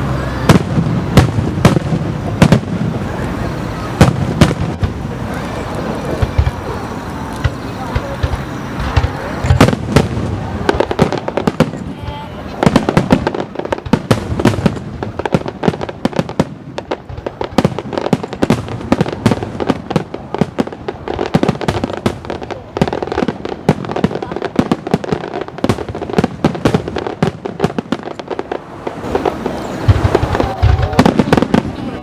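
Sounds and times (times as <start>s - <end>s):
fireworks bangs and crackles: 0.0s - 32.0s.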